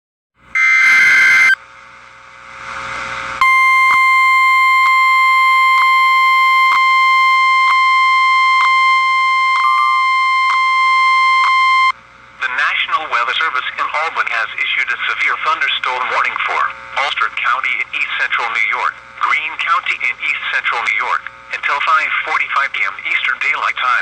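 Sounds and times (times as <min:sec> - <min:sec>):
steady high alert tone: 0:00.6 - 0:01.6, 0:03.4 - 0:11.9
warbling data burst: 0:00.6 - 0:01.6.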